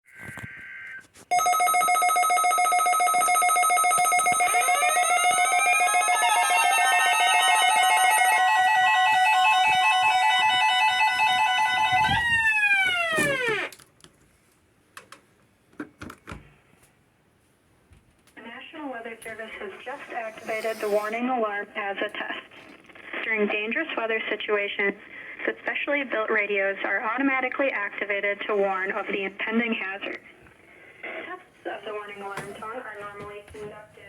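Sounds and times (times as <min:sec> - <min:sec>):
pulsing alarm beeps: 0:02.4 - 0:13.7
rising siren-like wail: 0:04.2 - 0:13.7.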